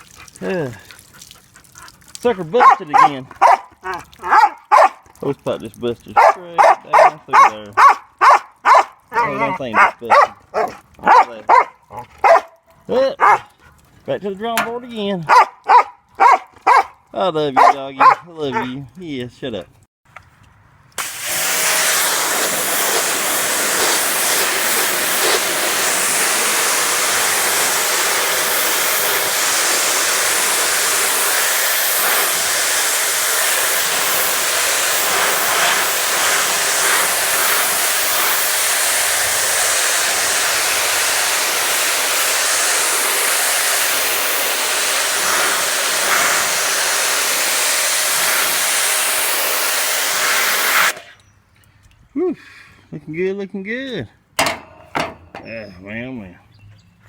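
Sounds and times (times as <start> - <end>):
pressure washer water jet hissing: 2.2 - 5.0, 5.6 - 12.4, 21.0 - 51.0.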